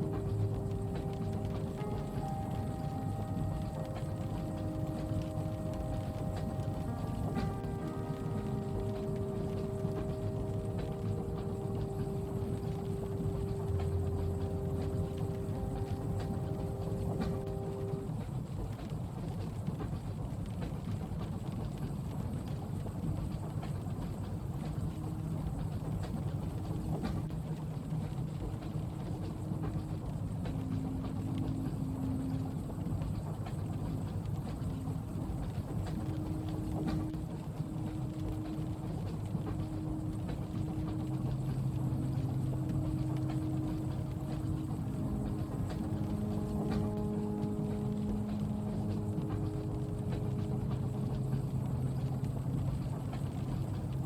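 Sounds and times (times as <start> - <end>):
faint hums: 0.0 - 18.9, 21.7 - 54.0
rain ticking on window: 0.0 - 54.0
train carriage rumbling: 0.0 - 54.0.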